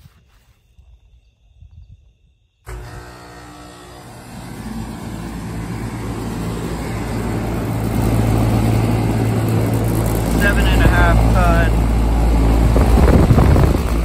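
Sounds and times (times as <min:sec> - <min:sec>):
compressor hum: 0:02.6 - 0:14.0
condenser fan rushing: 0:02.7 - 0:14.0.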